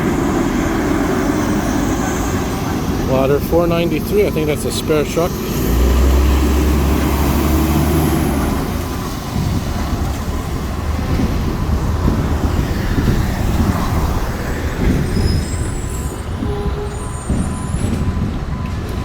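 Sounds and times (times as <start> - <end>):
fire truck diesel rumble: 0.0 - 19.0.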